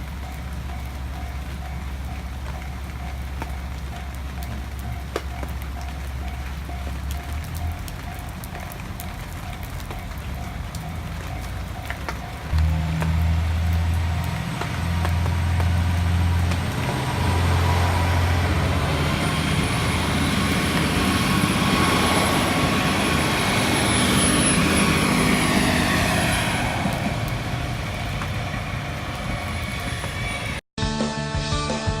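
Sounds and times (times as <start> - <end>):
train running noise: 0.0 - 30.6
falling whine: 1.2 - 30.6
low hum: 12.4 - 21.8.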